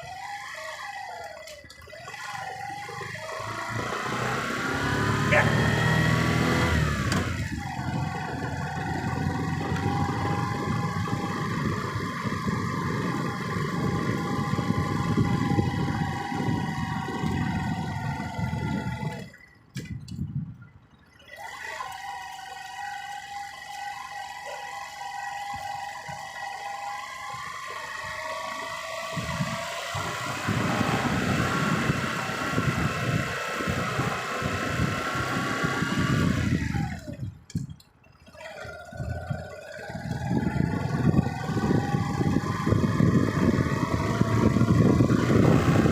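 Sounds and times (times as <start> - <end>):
vehicle engine and road noise: 0.0 - 45.9
thin steady whine: 20.6 - 45.9.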